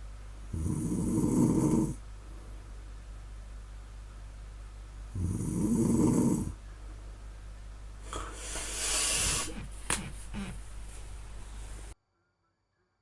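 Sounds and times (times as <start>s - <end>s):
person snoring: 0.5s - 2.0s, 5.1s - 6.6s, 8.1s - 10.6s
noisy breath: 8.0s - 12.0s.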